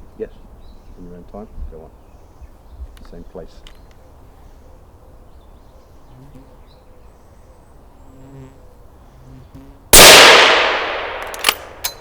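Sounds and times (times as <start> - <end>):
faint insect buzz: 5.9 - 9.9
rifle shot echoing: 9.9 - 12.0.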